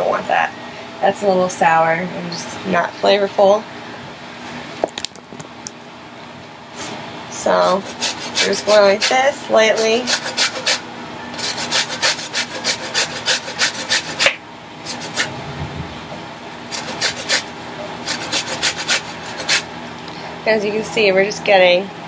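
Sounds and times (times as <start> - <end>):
lemon peel rasping on metal grater: 7.5 - 15.3, 16.7 - 19.7.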